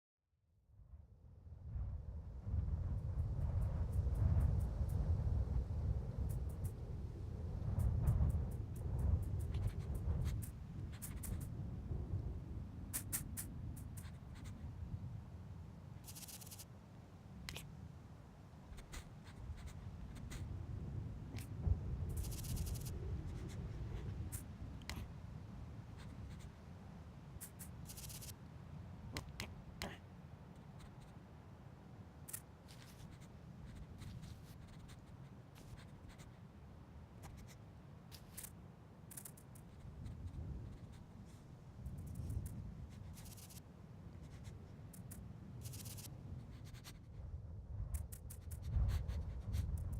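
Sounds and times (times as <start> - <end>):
low steady rumble: 0.8 - 49.9
scratching and scraping: 9.2 - 11.5, 16.0 - 16.6, 21.4 - 25.1, 27.4 - 28.4, 37.2 - 41.0, 42.0 - 43.6, 44.2 - 47.2.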